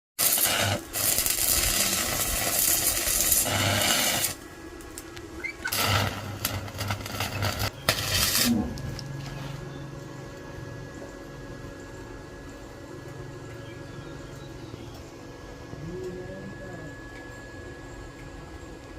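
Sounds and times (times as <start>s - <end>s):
power grinder on steel: 0.2s - 4.4s, 5.6s - 9.1s
faint low hum: 4.2s - 18.9s.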